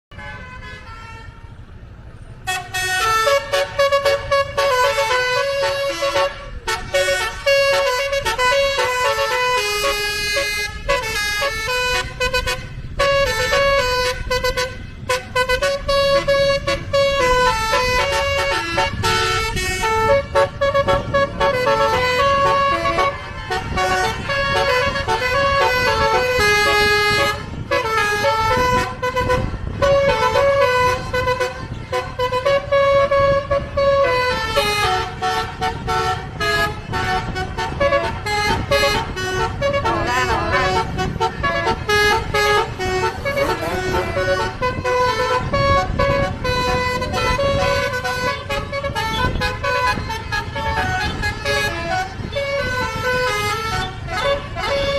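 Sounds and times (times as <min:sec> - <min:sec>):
musical air horn playing a tune: 0:02.4 - 0:54.9.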